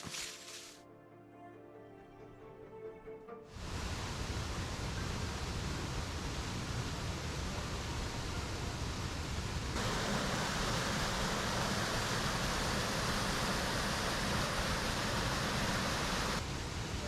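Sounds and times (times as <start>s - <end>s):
rush of running water: 3.6s - 17.0s
soft background hiss: 3.6s - 17.0s.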